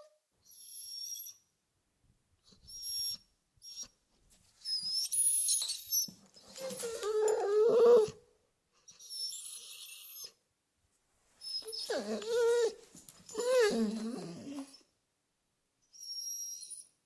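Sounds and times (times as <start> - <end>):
dog whimpering: 6.4 - 10.4, 11.4 - 14.9.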